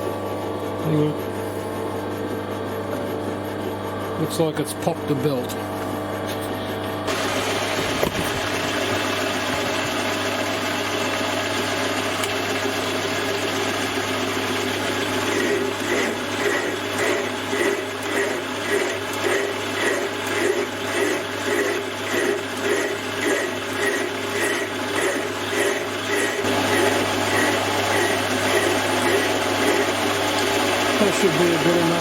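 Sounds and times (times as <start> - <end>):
metal lathe motor hum: 5.6 - 32.0
whirring gears: 14.8 - 32.0.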